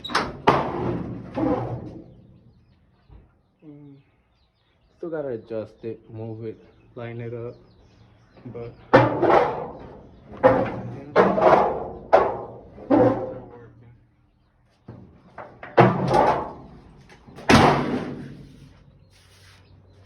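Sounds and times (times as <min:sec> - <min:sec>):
heavy metallic thuds: 0:08.8 - 0:13.5, 0:14.8 - 0:18.8.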